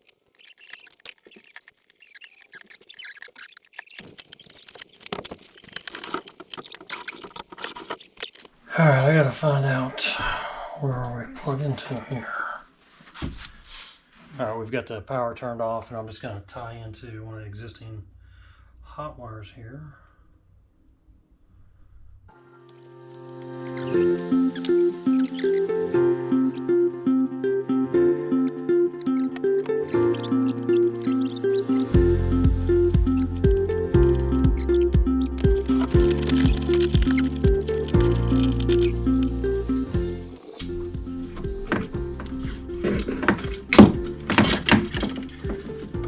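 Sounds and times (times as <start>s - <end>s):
light clicks taps and scrapes: 0.0s - 8.5s
instrumental music with picked notes: 22.4s - 46.0s.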